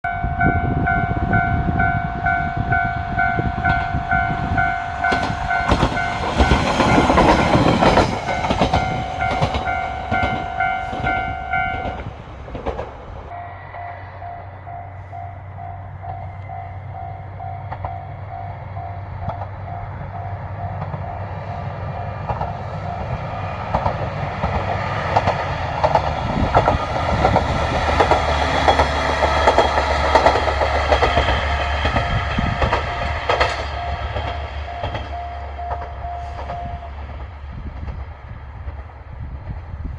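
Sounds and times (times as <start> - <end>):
diesel railcar rumble: 0.0 - 39.9
level crossing alarm ringing: 0.1 - 12.0, 30.9 - 36.9
wheels clacking on rail joints: 3.6 - 13.4, 15.6 - 21.2, 21.8 - 39.9.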